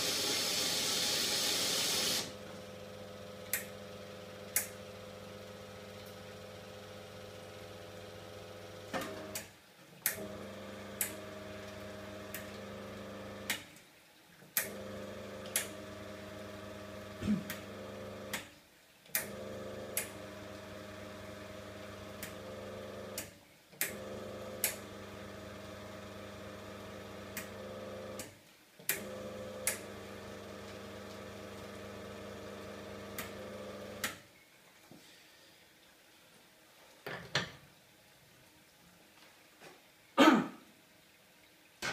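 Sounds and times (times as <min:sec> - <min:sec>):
espresso machine motor hum: 0:00.0 - 0:09.3, 0:10.2 - 0:13.5, 0:14.6 - 0:18.3, 0:19.2 - 0:23.2, 0:23.9 - 0:28.2, 0:29.0 - 0:34.0.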